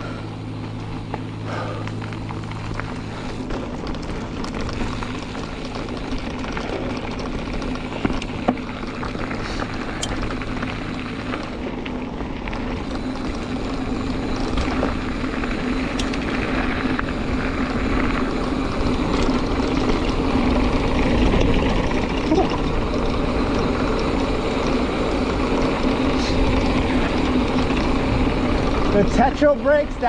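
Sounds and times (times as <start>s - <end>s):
bike tyre noise on dirt: 0.0s - 30.0s.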